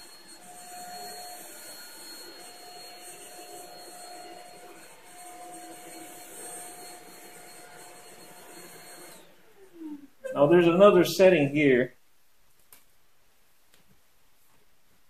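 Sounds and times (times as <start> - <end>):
stick vacuum running: 0.0 - 11.1.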